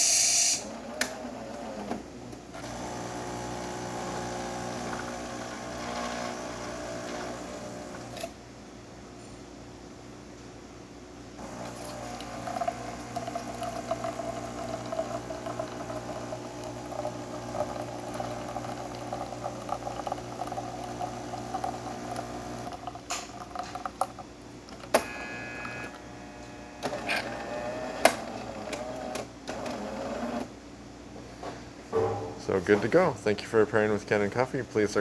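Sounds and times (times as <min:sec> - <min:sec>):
espresso machine pump hum: 0:02.6 - 0:08.3, 0:11.4 - 0:30.5.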